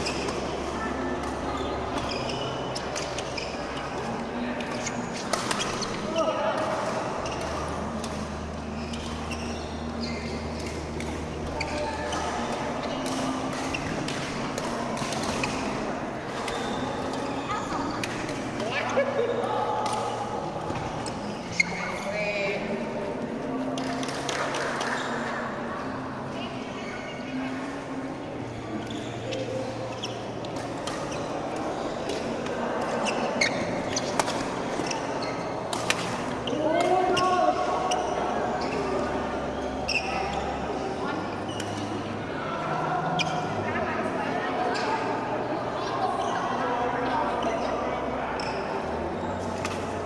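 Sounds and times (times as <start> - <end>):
shoes squeaking on court: 0.0 - 22.5, 26.8 - 42.2, 48.4 - 50.0
murmur of hall: 0.0 - 50.0.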